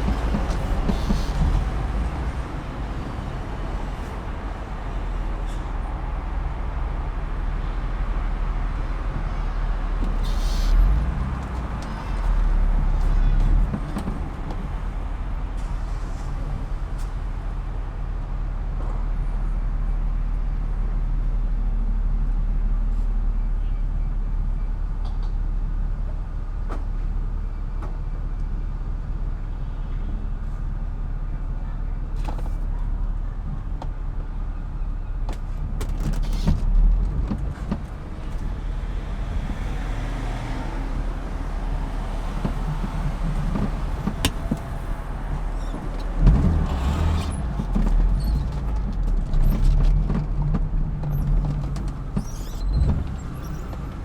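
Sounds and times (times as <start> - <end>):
car engine rumble from inside cabin: 0.0 - 54.0
short thump: 46.0 - 46.8.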